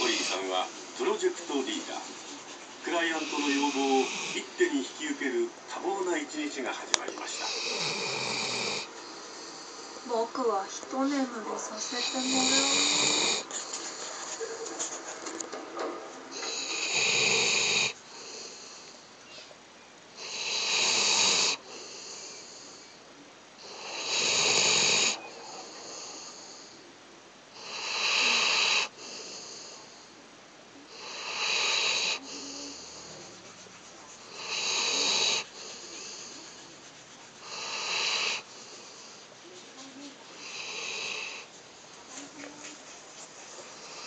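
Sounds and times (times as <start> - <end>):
quiet breathing: 0.0 - 15.5, 16.2 - 44.0
person snoring: 7.4 - 10.2, 11.9 - 13.5.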